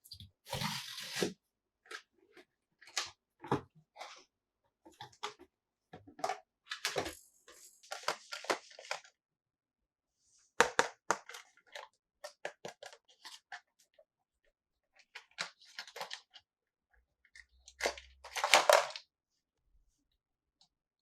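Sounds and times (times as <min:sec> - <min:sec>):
packaging crinkling and rustling: 0:00.5 - 0:01.3, 0:17.8 - 0:19.0.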